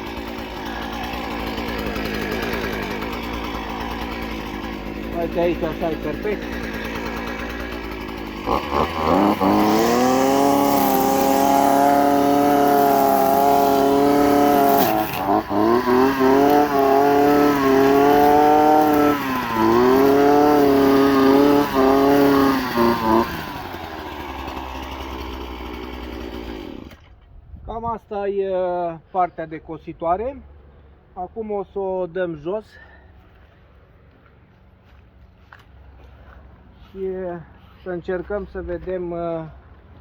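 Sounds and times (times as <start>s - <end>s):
grass trimmer engine revving: 0.0s - 27.1s.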